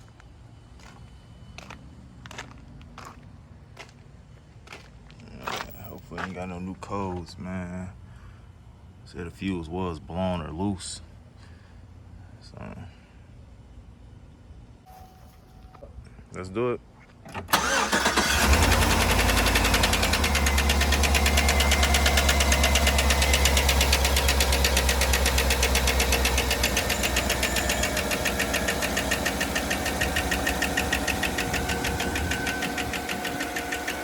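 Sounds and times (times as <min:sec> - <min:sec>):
car engine idling: 0:17.5 - 0:34.0
fast even engine ticking: 0:17.6 - 0:34.0.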